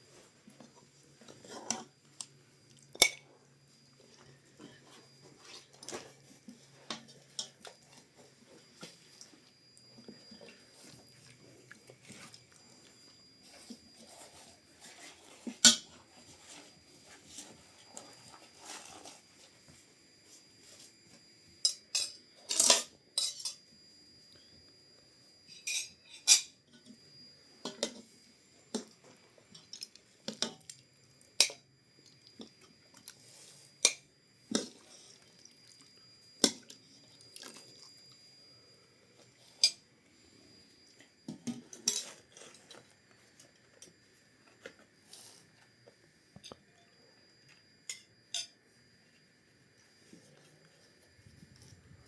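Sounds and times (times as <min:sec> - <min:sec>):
cutlery clinking on plates: 0:21.7 - 0:23.6.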